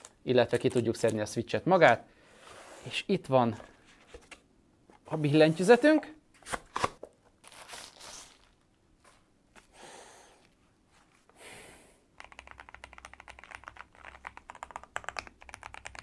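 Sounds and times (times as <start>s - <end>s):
mechanical keyboard typing: 12.2s - 16.0s.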